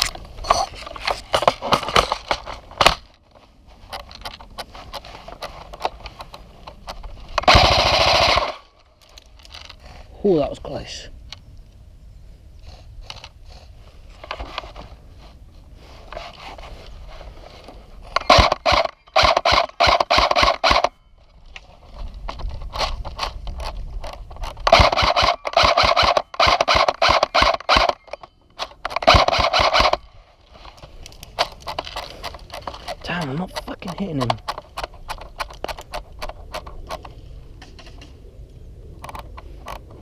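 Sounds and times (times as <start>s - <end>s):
airsoft gun firing: 7.4s - 8.6s, 18.2s - 20.9s, 24.7s - 28.0s, 29.0s - 30.0s.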